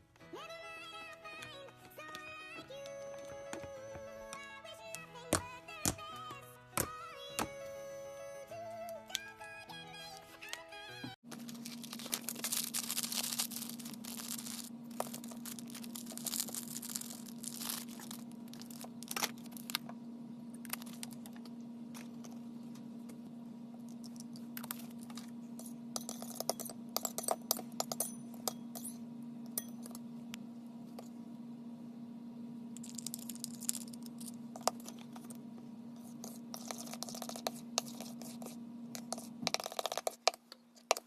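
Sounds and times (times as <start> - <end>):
steady low hum: 11.1 - 41.0
slime crackling and popping: 11.5 - 19.8.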